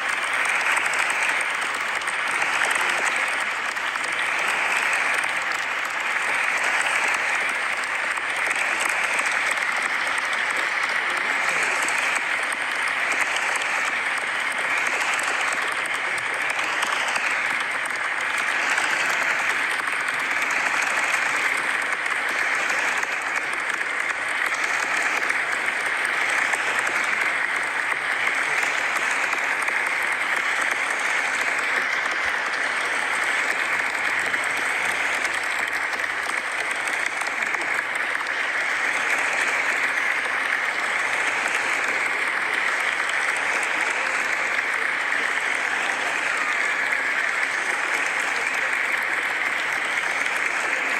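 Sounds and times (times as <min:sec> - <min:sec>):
crowd applause: 0:00.0 - 0:50.9.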